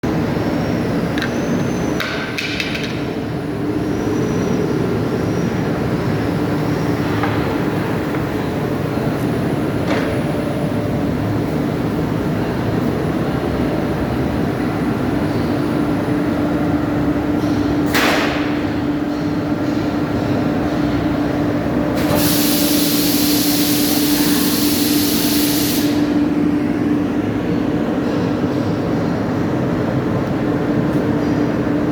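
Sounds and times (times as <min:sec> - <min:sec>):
loud hiss: 0:22.0 - 0:26.1.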